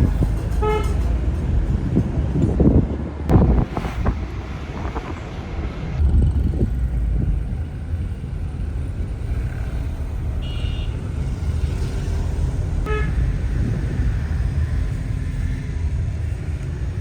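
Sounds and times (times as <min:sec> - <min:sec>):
street traffic: 0:00.0 - 0:17.0
car horn toot: 0:00.6 - 0:01.0, 0:10.4 - 0:11.1, 0:12.8 - 0:13.3.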